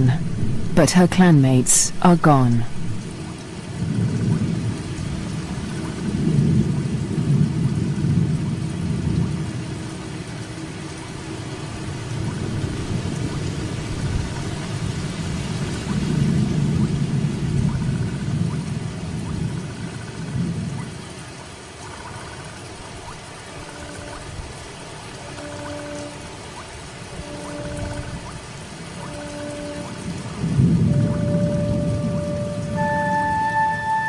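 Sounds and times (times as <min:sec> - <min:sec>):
low rumbling: 0:00.0 - 0:00.9, 0:27.2 - 0:34.0
heavy rain: 0:00.0 - 0:34.0.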